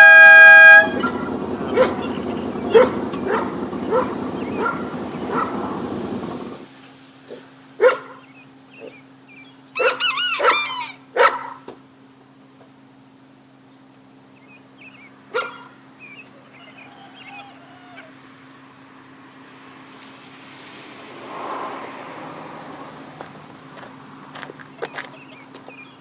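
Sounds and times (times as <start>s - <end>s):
steady low hum: 0.0s - 9.8s, 11.8s - 26.0s
dog barking: 1.0s - 2.1s, 2.7s - 5.8s, 7.3s - 8.2s, 9.8s - 11.7s, 15.3s - 15.8s.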